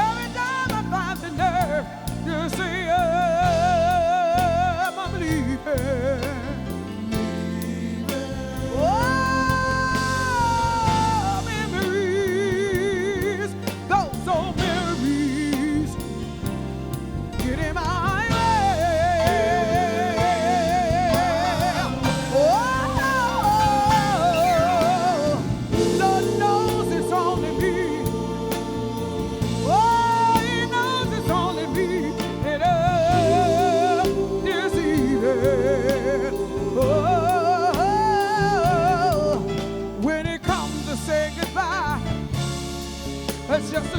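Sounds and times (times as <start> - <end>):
soul band playing slow song: 0.0 - 43.9
person singing with vibrato: 7.0 - 16.2, 17.5 - 42.0.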